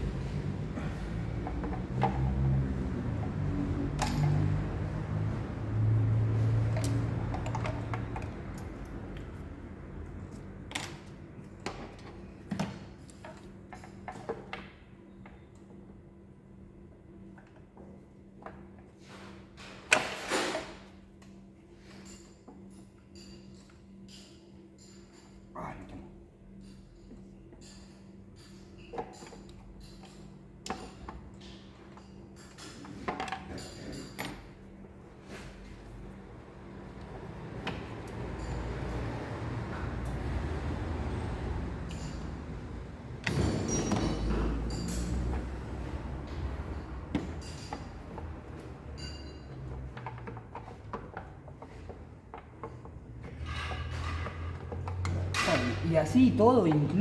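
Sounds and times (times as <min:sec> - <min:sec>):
steady low hum: 0:00.0 - 0:11.4
metal tools clinking on engine parts: 0:37.4 - 0:39.2, 0:41.8 - 0:50.9.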